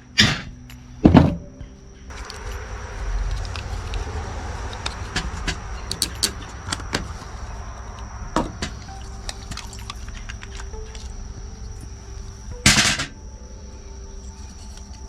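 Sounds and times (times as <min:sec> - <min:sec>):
faint high-pitched tone: 0:00.7 - 0:15.0
tools clicking and knocking: 0:05.9 - 0:06.8.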